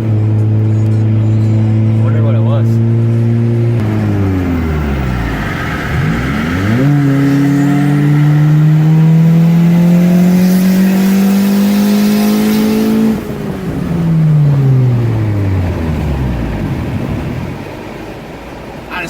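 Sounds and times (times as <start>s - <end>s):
car engine revving: 0.0s - 19.0s.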